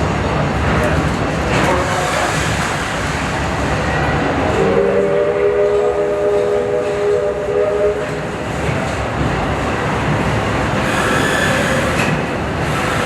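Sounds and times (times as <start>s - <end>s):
wheels clattering on rail: 0.0s - 4.7s, 8.0s - 13.0s
train rumble: 0.0s - 13.0s
steam locomotive chime whistle: 4.6s - 8.1s.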